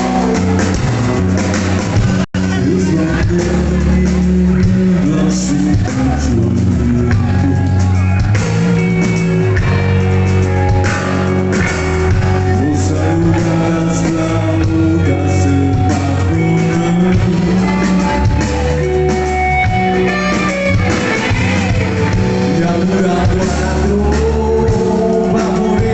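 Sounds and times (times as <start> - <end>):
person singing: 0.0 - 1.0, 2.4 - 10.5, 12.2 - 25.9
bass guitar: 0.0 - 25.9
drums and cymbals: 0.0 - 25.9
electric guitar: 0.0 - 25.9.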